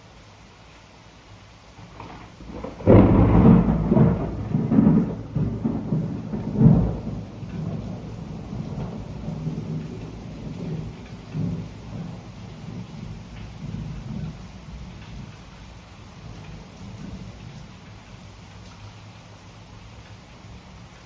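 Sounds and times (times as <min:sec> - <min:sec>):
steady rainfall: 0:00.0 - 0:21.0
thunder clap and rumble: 0:01.8 - 0:17.7.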